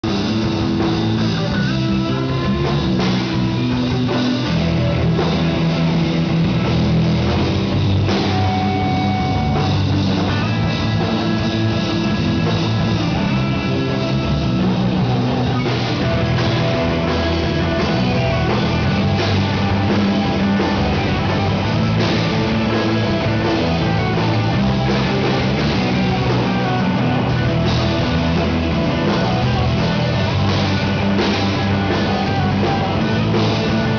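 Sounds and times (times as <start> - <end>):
rock band playing live: 0.0 - 33.9.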